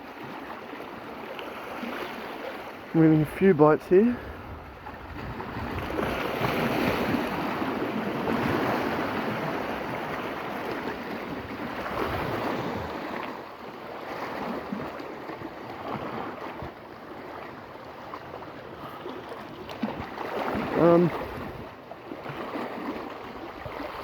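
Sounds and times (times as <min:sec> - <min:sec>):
surf washing against rocks: 0:00.0 - 0:24.0
wind on microphone: 0:04.2 - 0:10.2, 0:11.1 - 0:13.1, 0:19.8 - 0:21.8.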